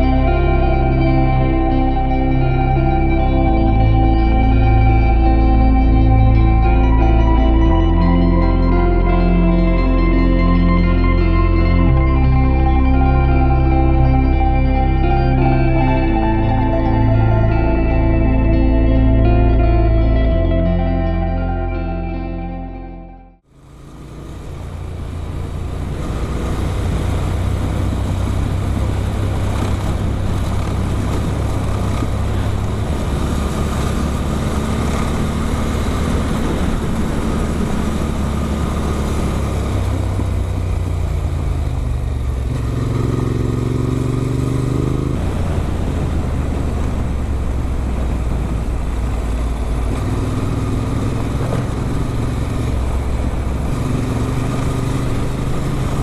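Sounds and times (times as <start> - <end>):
motorcycle engine running: 23.4 - 56.0.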